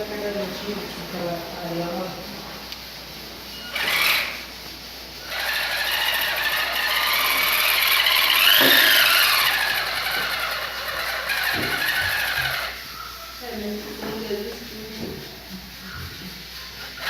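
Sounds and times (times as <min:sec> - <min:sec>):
toy truck electric motor whining: 0:03.5 - 0:04.6, 0:05.2 - 0:13.8, 0:15.8 - 0:17.0.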